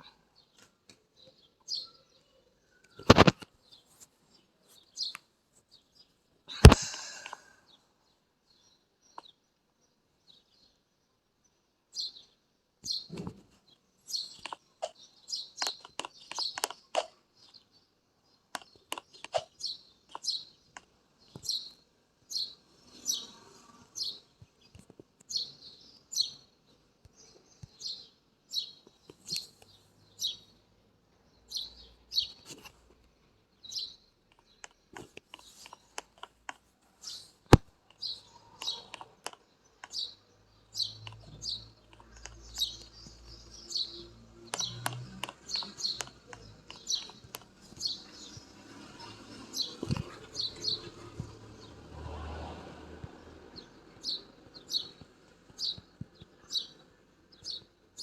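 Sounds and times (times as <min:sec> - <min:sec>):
birds chirping: 0:00.0 - 0:58.0
sharp clicks: 0:02.8 - 0:03.5, 0:14.2 - 0:17.2, 0:18.5 - 0:20.9, 0:34.3 - 0:36.6, 0:37.5 - 0:40.0, 0:41.0 - 0:43.8, 0:44.5 - 0:48.4.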